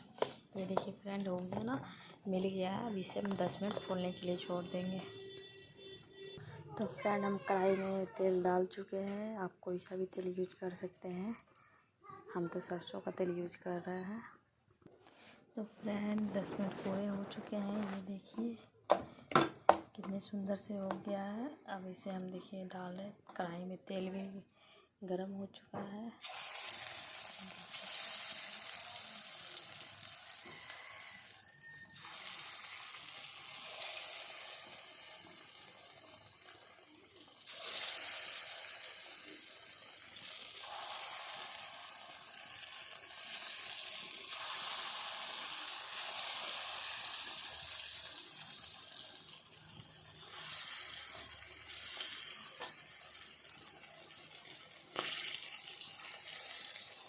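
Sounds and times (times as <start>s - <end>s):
batter sizzling in hot oil: 26.2s - 57.0s.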